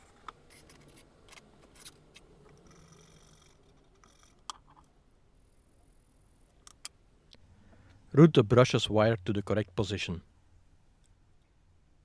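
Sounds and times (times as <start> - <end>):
small parts clicking: 0.0 - 7.0.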